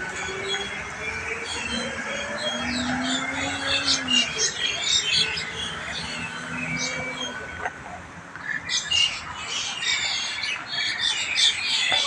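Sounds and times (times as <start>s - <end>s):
flock of birds chattering: 0.0s - 12.0s.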